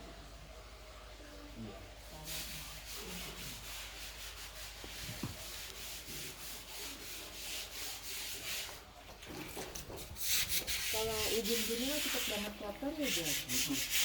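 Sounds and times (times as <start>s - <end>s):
stiff brush scrubbing hard surface: 2.0s - 8.8s, 9.4s - 14.0s.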